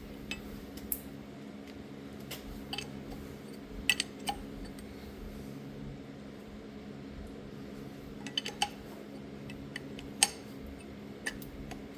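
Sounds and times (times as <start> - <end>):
steady low hum: 0.0 - 11.9
metal tools clicking: 3.9 - 4.4.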